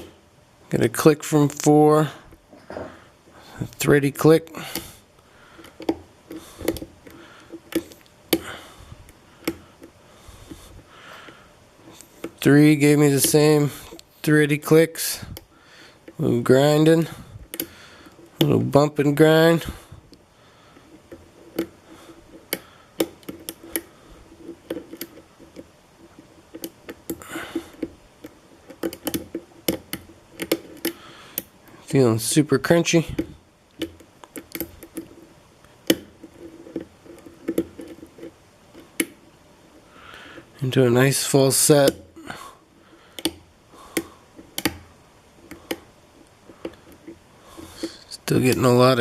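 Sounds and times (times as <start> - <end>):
faint lock pick scraping: 20.7 - 31.6, 33.2 - 39.2
lock pick clicking: 26.5 - 31.5, 33.8 - 35.1, 43.2 - 44.9.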